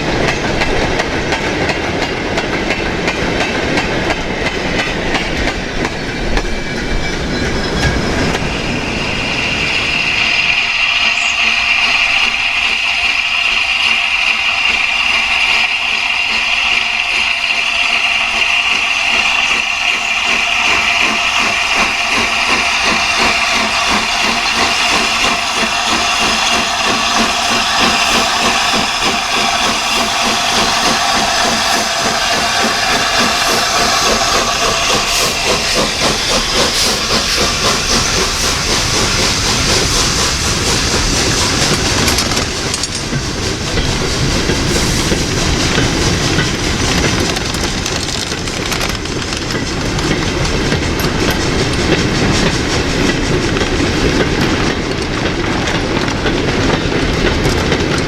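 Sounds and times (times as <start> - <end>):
steam locomotive exhaust beat: 0.0 - 58.0
train wheels on rails: 0.0 - 58.0
steam hissing: 2.9 - 58.0
steady high tone: 6.4 - 39.9.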